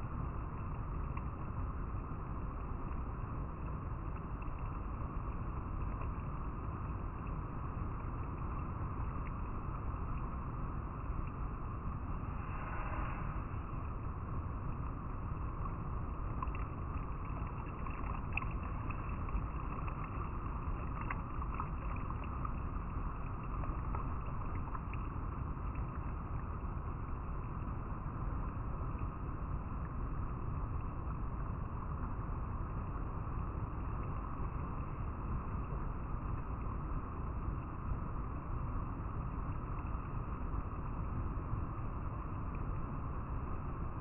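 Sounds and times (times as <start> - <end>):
small splashes and drips: 0.1 - 30.0
river flowing over rocks: 11.7 - 28.8.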